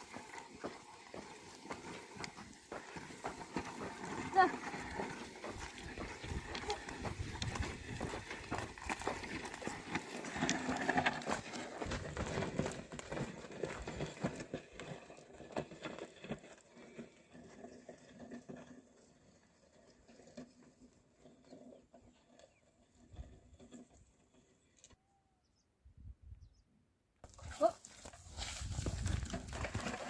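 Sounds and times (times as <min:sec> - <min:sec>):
faint bird chirps: 0:25.0 - 0:26.8.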